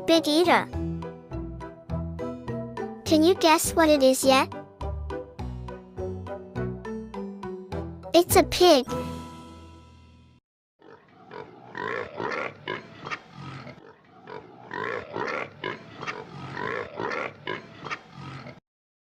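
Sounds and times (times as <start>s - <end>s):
pig grunting and oinking: 10.8s - 18.6s.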